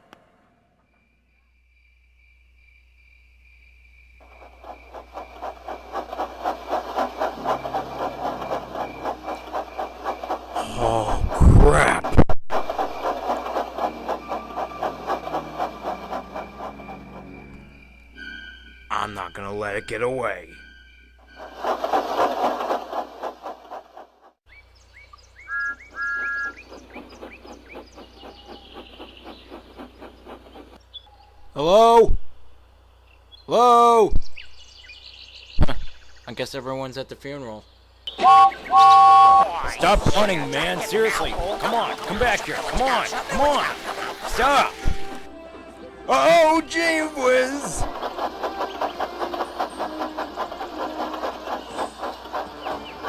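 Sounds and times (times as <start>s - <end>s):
steam locomotive chuffing: 4.2s - 30.9s, 38.1s - 53.0s
birds chirping: 24.5s - 31.7s, 32.6s - 33.6s, 34.2s - 53.0s
two-note whistle blasts: 38.1s - 39.6s.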